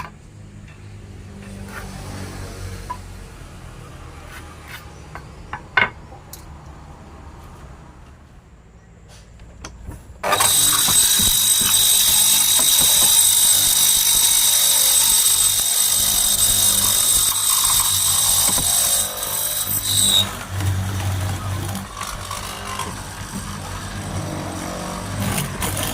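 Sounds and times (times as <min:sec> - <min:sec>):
electric power tool whining: 0:10.2 - 0:25.9.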